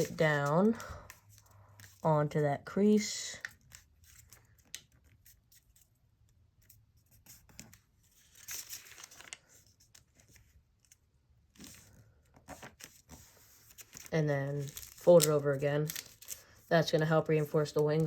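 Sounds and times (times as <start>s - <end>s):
paper rustling and crinkling: 0.0s - 2.1s, 6.6s - 18.0s.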